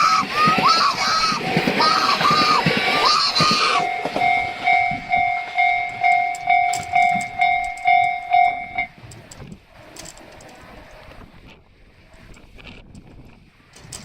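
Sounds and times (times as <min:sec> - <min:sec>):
railroad crossing bell ringing: 0:01.2 - 0:09.1.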